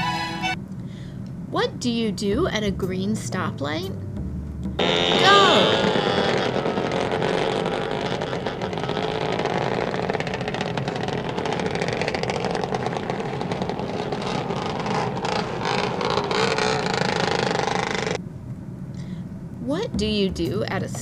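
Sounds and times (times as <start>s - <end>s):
car engine accelerating away: 4.0s - 18.2s.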